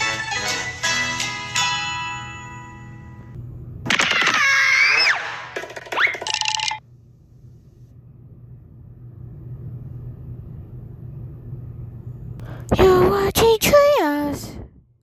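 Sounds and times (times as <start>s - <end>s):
low electrical hum: 2.1s - 4.9s, 6.3s - 15.0s.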